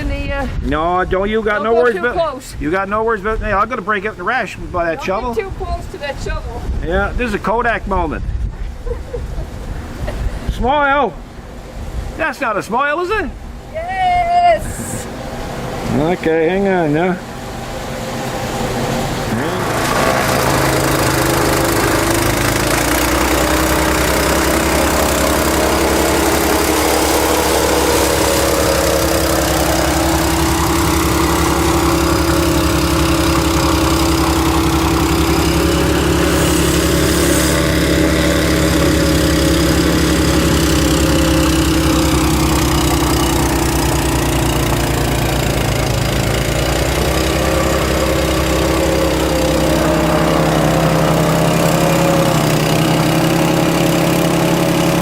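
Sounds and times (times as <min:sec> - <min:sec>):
snow-clearing machine engine running: 0:14.8 - 0:55.0.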